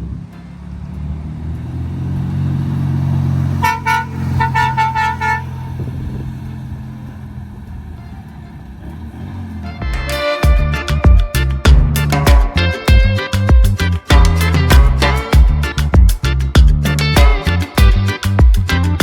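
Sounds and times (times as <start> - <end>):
engine idling: 0.0 - 19.0
short horn beeps: 3.6 - 5.5.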